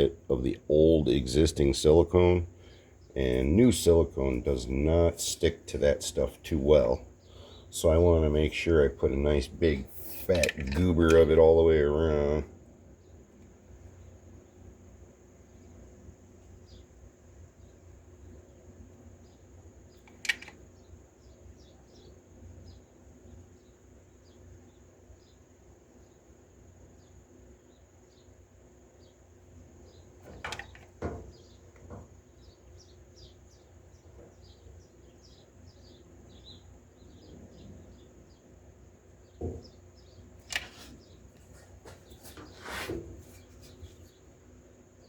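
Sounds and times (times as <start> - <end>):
sharp clicks and knocks: 10.1 - 11.4, 20.0 - 20.6, 30.2 - 32.2, 40.4 - 41.5.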